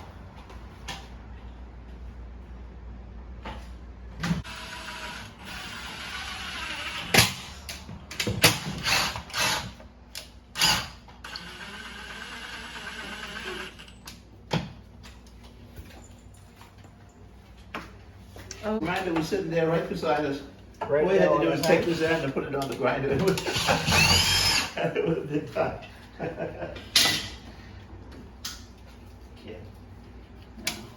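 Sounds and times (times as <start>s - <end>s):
small power tool whirring: 4.4s - 7.2s, 8.7s - 9.8s, 10.6s - 13.9s, 23.5s - 24.8s
knocks and clatters of parts: 7.1s - 10.9s.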